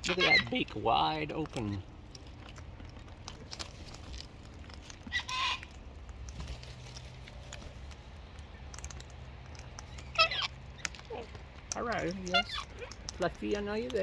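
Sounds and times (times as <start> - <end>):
parrot squawks: 0.0 - 0.5, 5.1 - 5.7, 10.1 - 10.6.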